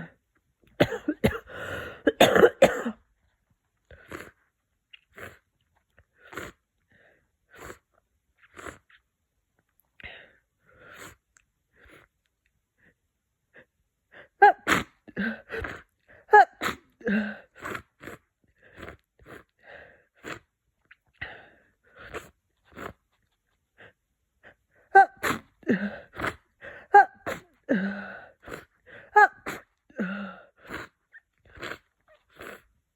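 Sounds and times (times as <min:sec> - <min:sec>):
congested sneezes: 0:00.8 - 0:03.0, 0:14.4 - 0:18.2, 0:24.9 - 0:27.8, 0:28.4 - 0:29.7
sniffing through blocked nose: 0:03.9 - 0:04.4, 0:06.2 - 0:07.8, 0:08.4 - 0:08.8, 0:10.1 - 0:11.2, 0:11.8 - 0:12.1, 0:14.6 - 0:15.9, 0:16.6 - 0:20.5, 0:21.2 - 0:23.1, 0:25.1 - 0:32.7.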